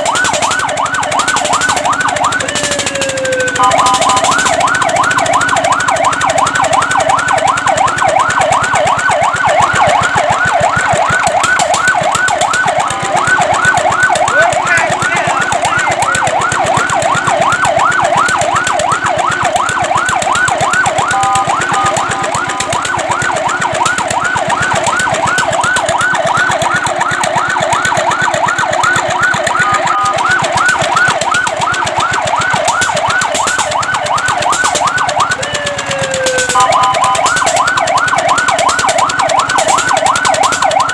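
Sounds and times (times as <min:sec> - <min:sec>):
fire truck siren yelping: 0:00.0 - 0:40.9.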